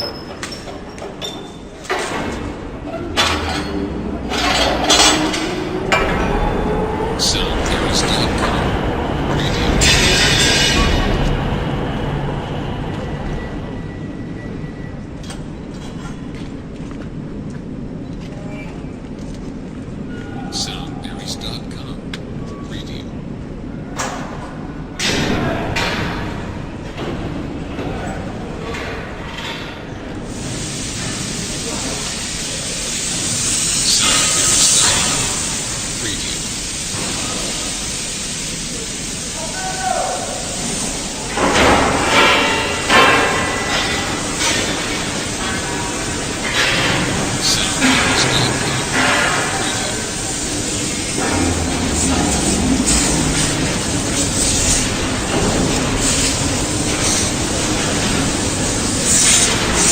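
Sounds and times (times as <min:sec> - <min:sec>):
machinery low rumble: 0:02.6 - 0:24.0
hissing bursts: 0:44.2 - 0:59.9.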